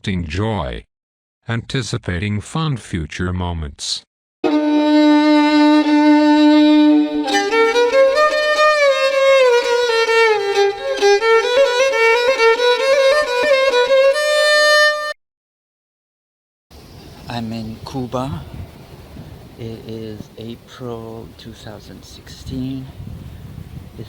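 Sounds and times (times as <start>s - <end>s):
solo violin melody: 4.4s - 15.2s.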